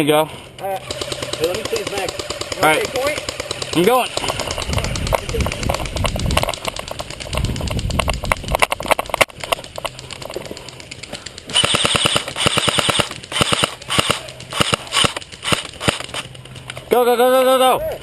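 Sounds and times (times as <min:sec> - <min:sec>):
airsoft guns firing: 0:00.8 - 0:06.0, 0:11.4 - 0:16.3.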